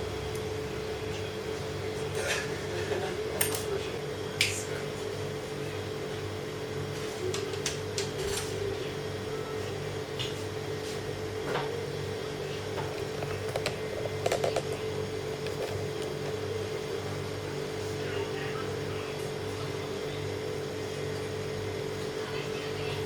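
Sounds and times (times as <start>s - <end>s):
steady machine hum: 0.0s - 23.0s.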